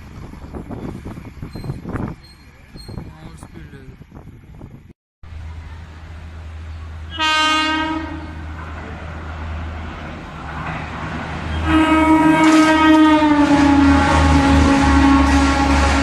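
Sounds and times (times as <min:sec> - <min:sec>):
train rumbling: 0:00.0 - 0:16.0
train horn blasts: 0:07.1 - 0:08.6, 0:11.5 - 0:16.0.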